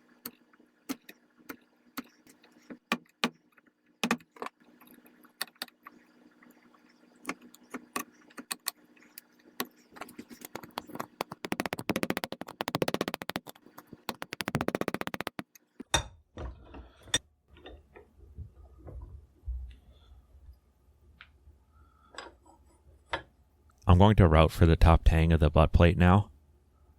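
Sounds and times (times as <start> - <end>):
tools tapping on wood: 10.5 - 16.1.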